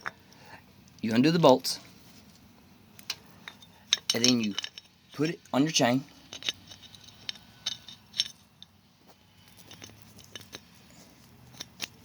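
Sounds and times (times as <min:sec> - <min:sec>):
metal chain clinks and rattles: 0:03.1 - 0:12.0.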